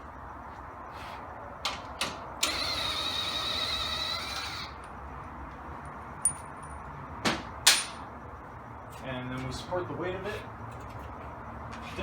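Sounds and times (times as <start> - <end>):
small power tool whirring: 2.4 - 4.8.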